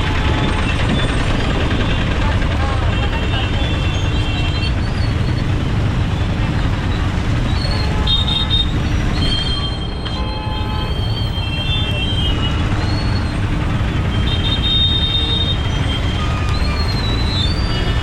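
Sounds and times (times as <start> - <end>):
wind and road noise: 0.0 - 11.2.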